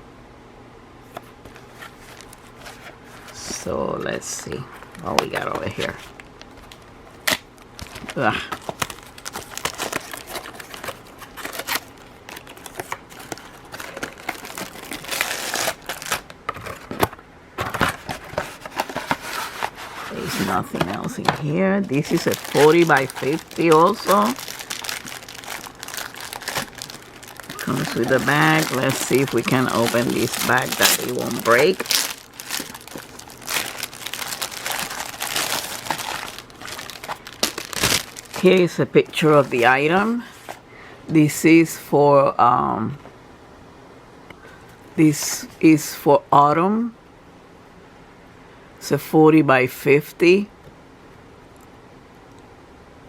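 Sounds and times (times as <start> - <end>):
packaging rustling and crinkling: 1.1 - 3.7, 4.7 - 40.6.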